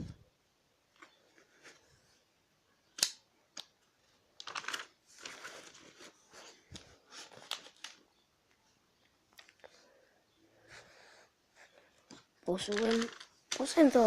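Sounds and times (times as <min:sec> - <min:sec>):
book pages rustling: 0:04.4 - 0:08.1, 0:12.1 - 0:14.0.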